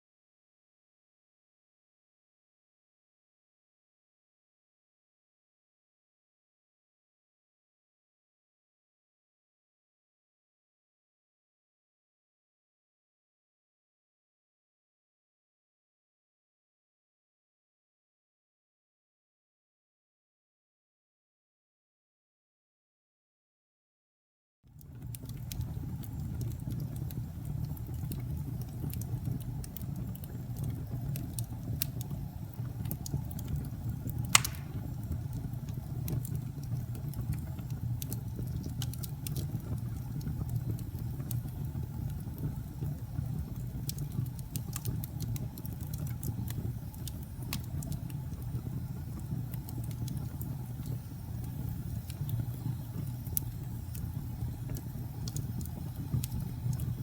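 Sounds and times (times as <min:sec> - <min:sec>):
wood crackling and popping: 0:24.8 - 0:57.0
fire roaring: 0:24.9 - 0:57.0.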